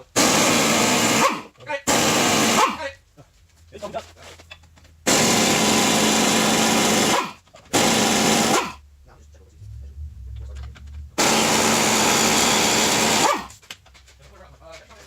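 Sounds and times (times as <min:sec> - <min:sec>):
power tool running: 0:00.2 - 0:02.8, 0:05.1 - 0:08.8, 0:11.2 - 0:13.5.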